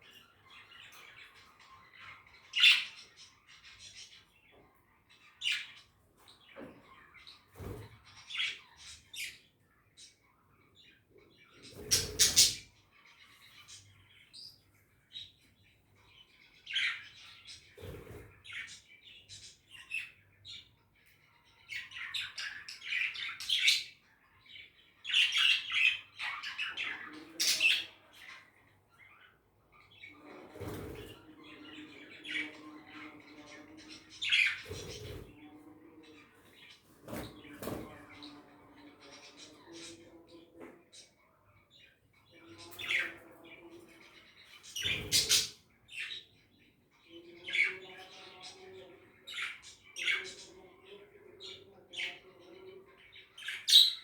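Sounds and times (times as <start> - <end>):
budgerigars chirping: 11.4 - 14.6, 41.5 - 46.7, 53.2 - 54.0.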